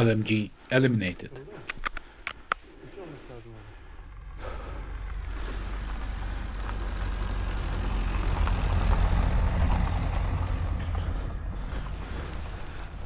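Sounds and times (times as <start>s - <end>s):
wind buffeting microphone: 4.1s - 13.0s.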